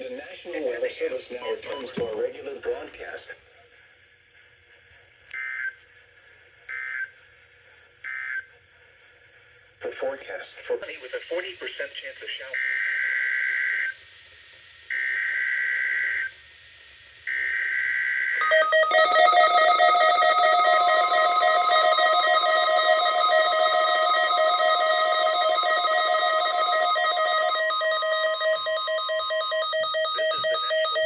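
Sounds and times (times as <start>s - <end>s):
loud fluttering alarm tone: 17.8s - 31.0s
steady pure tone: 18.4s - 31.0s.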